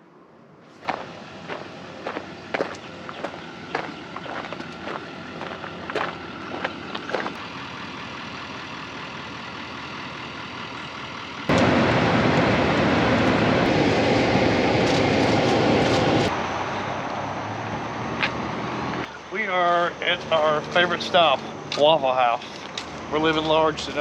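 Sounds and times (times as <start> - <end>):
steady background hum: 0.0 - 7.6, 11.5 - 24.0
road vehicle driving noise: 0.1 - 24.0.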